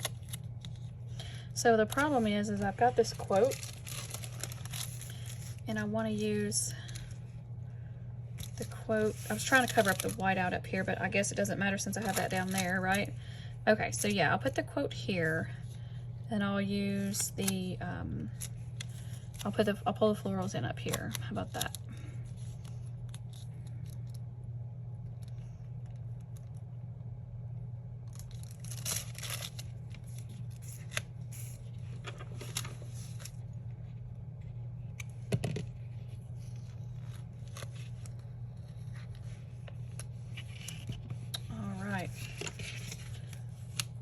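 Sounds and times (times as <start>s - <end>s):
steady low hum: 0.0s - 44.0s
paper rustling and scraping: 1.8s - 5.6s, 8.4s - 10.4s, 28.2s - 33.4s, 35.7s - 43.8s.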